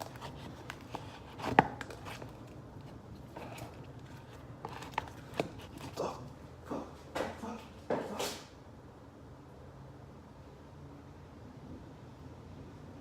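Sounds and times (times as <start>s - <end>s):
soft scraping: 0.0s - 6.1s.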